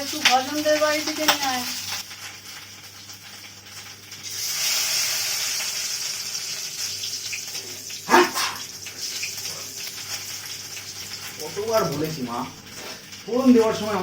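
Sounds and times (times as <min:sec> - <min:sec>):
spices sizzling in hot oil: 0:00.0 - 0:14.0
person sneezing: 0:08.1 - 0:08.7.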